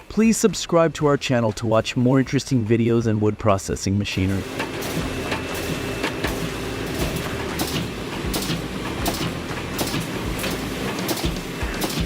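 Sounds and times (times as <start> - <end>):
low machinery hum: 4.2 - 12.0
machine clacking: 4.4 - 12.0.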